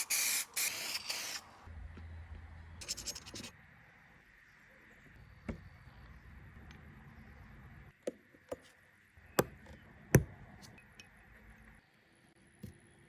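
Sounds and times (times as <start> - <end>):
faint low hum: 1.7 - 7.9.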